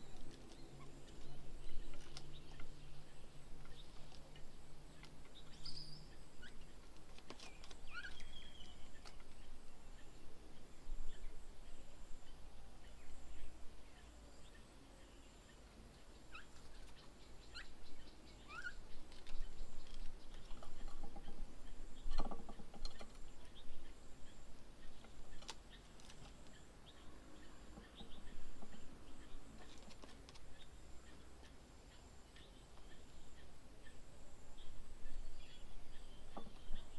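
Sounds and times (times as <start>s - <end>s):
birds chirping: 0.0s - 36.9s.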